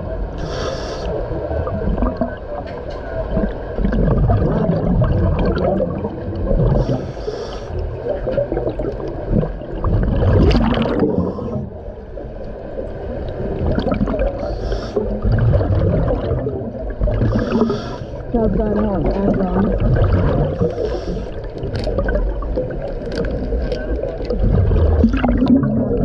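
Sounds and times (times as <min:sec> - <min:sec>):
air hissing on inhale: 0:00.4 - 0:01.2, 0:06.8 - 0:07.8, 0:14.4 - 0:15.1, 0:17.2 - 0:18.3, 0:20.6 - 0:21.6
bubbles gurgling: 0:01.2 - 0:07.2, 0:07.8 - 0:12.2, 0:12.8 - 0:26.0.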